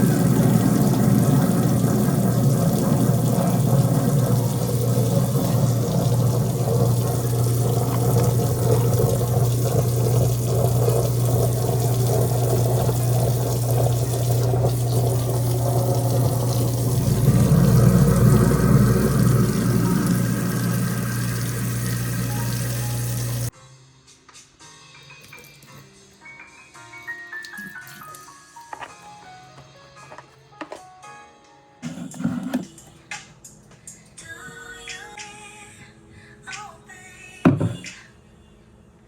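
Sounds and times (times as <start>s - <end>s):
faucet running into sink: 0.0s - 23.5s, 27.4s - 28.8s
low hum: 0.0s - 23.5s.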